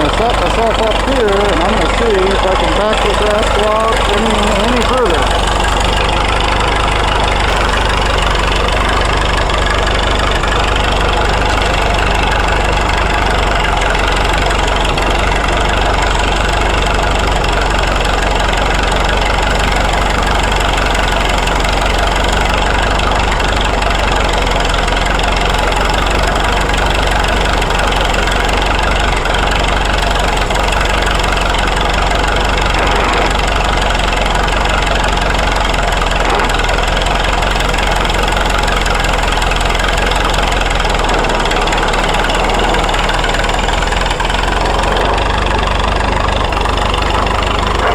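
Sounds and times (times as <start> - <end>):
tractor engine running: 0.0 - 47.9.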